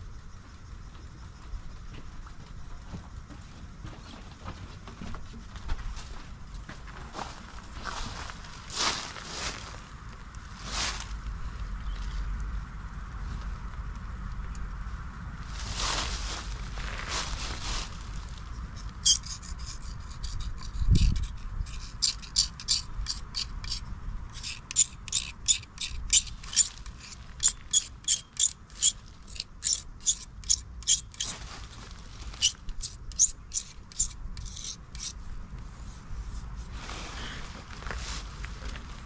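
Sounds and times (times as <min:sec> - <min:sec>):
ratchet wrench clicking: 0:19.0 - 0:31.3.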